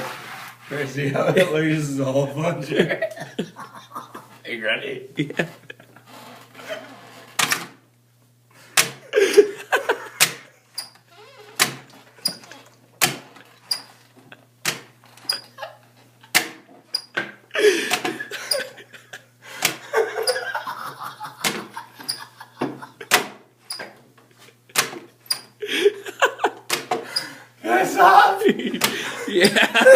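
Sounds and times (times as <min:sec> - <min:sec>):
people laughing: 0:02.7 - 0:04.4, 0:05.2 - 0:06.9, 0:09.0 - 0:10.6, 0:17.5 - 0:23.1, 0:25.6 - 0:26.7, 0:27.7 - 0:29.9.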